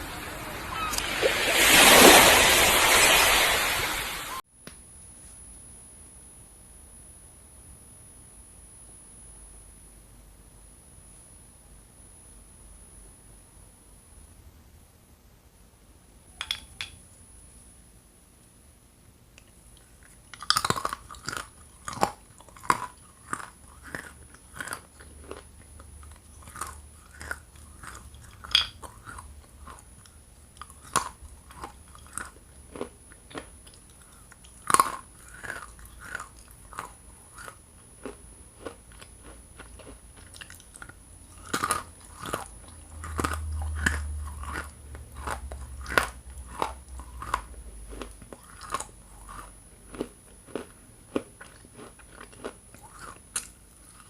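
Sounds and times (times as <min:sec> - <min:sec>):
clay being bitten and chewed: 0:19.4 - 0:54.0.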